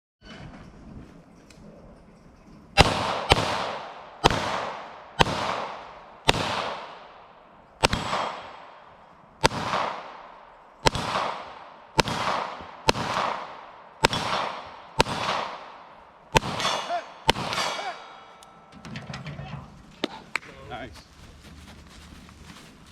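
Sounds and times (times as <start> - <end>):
gunshots with echo: 2.8 - 18.7.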